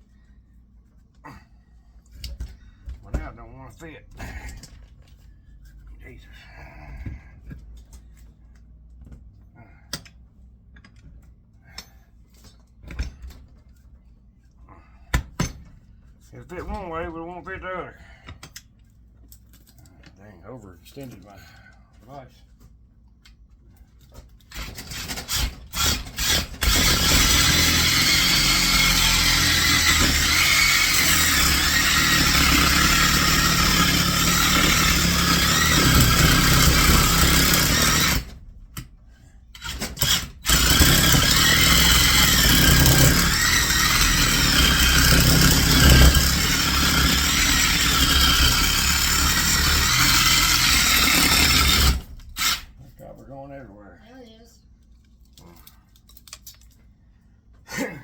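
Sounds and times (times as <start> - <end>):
reciprocating saw cutting metal: 24.5 - 38.4, 39.6 - 52.8.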